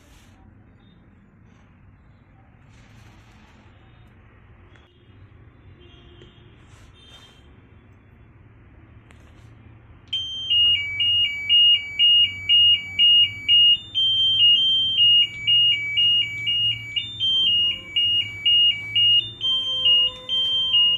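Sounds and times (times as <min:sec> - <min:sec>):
buzzer beeping tune: 0:10.2 - 0:20.9.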